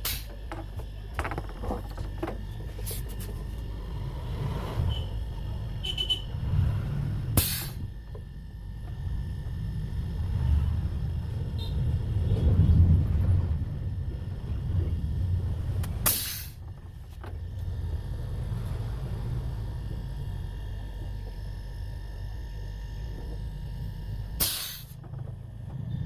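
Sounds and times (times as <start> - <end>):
gas hissing: 0.0 - 1.4, 2.1 - 12.0, 14.4 - 20.2, 24.3 - 25.0
low uneven rumble: 0.3 - 26.0.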